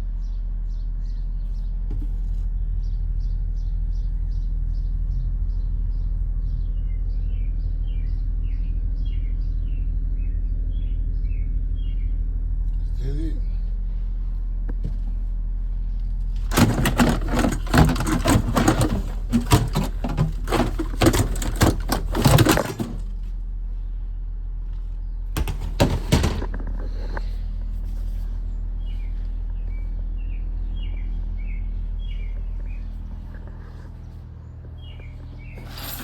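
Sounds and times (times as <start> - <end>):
rapid clattering and knocking: 16.4 - 23.2, 25.4 - 26.9.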